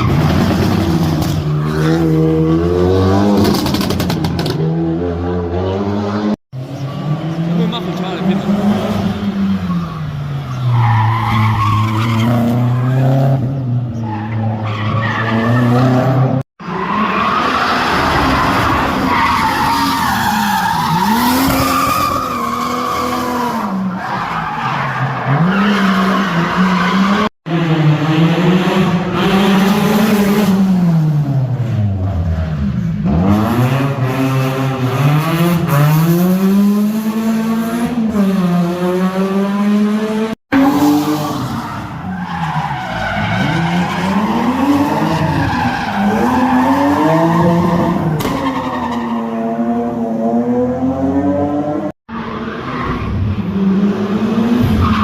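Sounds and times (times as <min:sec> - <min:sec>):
tyres squealing and skidding: 0:00.0 - 0:02.4, 0:06.6 - 0:27.3, 0:40.5 - 0:49.9, 0:52.1 - 0:53.7, 0:54.6 - 0:55.0.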